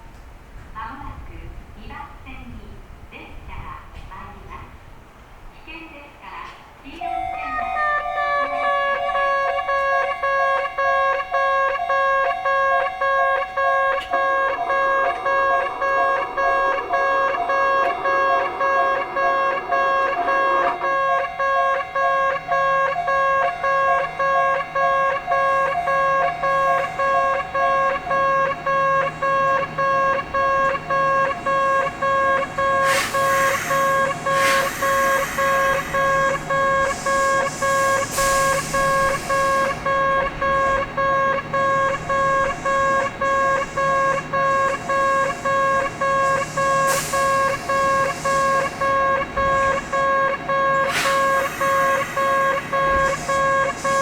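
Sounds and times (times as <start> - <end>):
level crossing warning bell: 7.0 - 54.0
second crossing bell: 7.0 - 54.0
short rushes of noise: 50.8 - 54.0.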